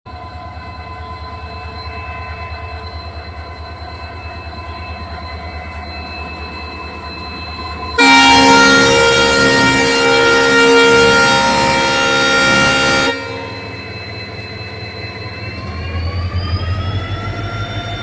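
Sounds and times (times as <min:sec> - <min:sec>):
locomotive engine humming: 0:00.1 - 0:18.0
loud locomotive horn: 0:07.9 - 0:13.9.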